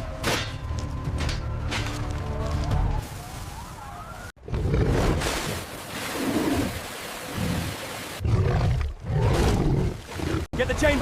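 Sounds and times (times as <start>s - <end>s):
rushing splashing water: 5.0s - 8.2s.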